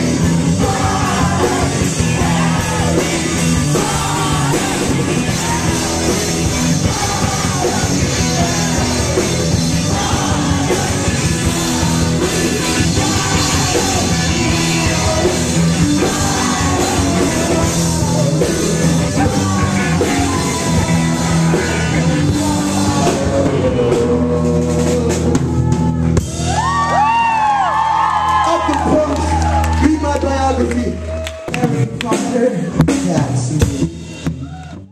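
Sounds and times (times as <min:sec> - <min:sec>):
person singing lead vocal: 0:00.0 - 0:26.1
live rock band playing: 0:00.0 - 0:34.9.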